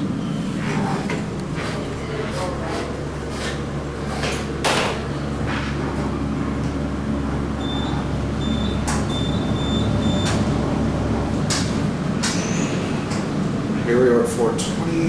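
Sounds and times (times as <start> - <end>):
elevator hum: 5.0 - 15.0
short high-pitched beeps: 7.6 - 10.3
elevator clunk: 7.6 - 13.3.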